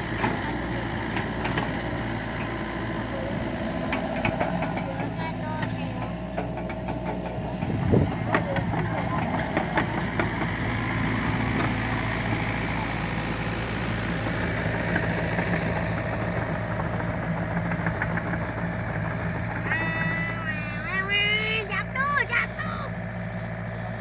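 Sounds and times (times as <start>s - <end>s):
excavator diesel engine running: 0.0s - 24.0s
high-pitched call: 19.7s - 21.8s.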